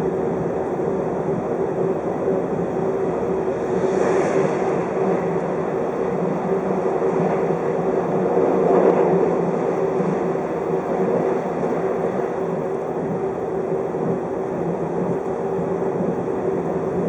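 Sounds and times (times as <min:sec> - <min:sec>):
constant low hum: 0:00.0 - 0:17.0.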